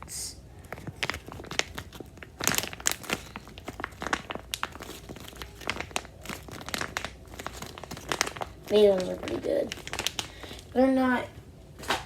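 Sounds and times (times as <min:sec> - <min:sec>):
plastic packaging crinkling: 0:00.6 - 0:12.0.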